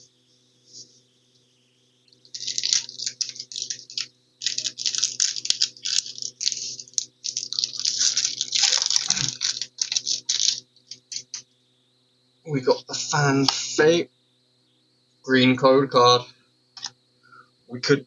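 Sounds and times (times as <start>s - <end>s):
foil wrapper crinkling and tearing: 2.3s - 11.4s.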